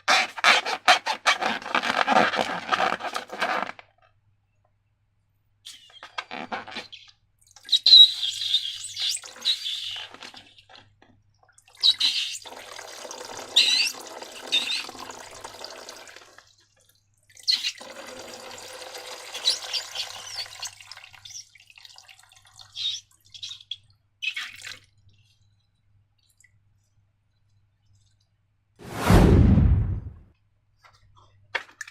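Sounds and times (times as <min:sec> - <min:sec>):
slime squeaks: 0:00.1 - 0:03.6, 0:05.7 - 0:10.7.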